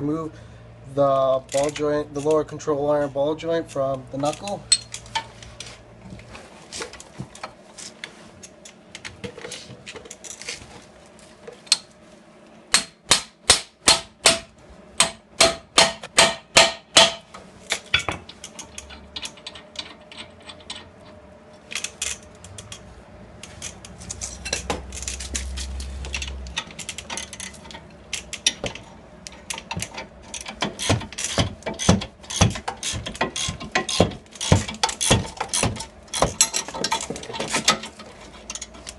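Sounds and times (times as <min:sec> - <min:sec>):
metal hammer strikes: 0:12.7 - 0:17.3.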